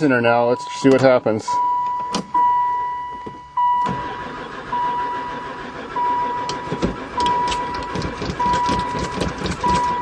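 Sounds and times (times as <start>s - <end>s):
dashboard warning chime beeping: 0.0s - 10.0s
starter cranking engine: 3.8s - 10.0s.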